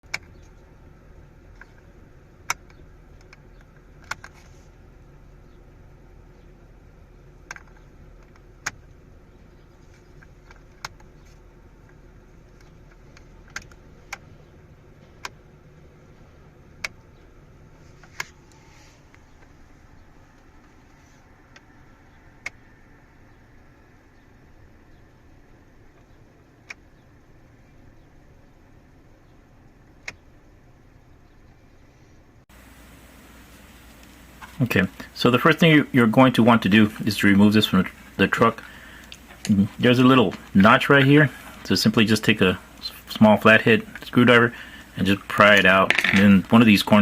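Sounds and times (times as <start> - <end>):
sharp clicks: 0.0 - 0.6, 1.5 - 4.5, 7.4 - 15.5, 29.7 - 30.3, 36.8 - 43.2
faint low hum: 0.0 - 47.0.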